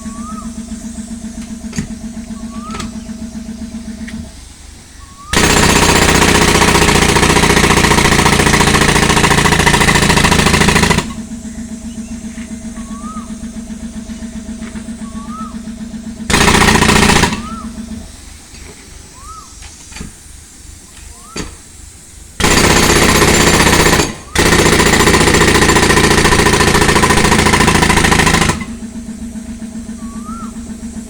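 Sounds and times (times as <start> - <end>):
pneumatic breaker hammering concrete: 1.3 - 3.1, 5.3 - 11.2, 16.3 - 18.0, 22.4 - 28.9.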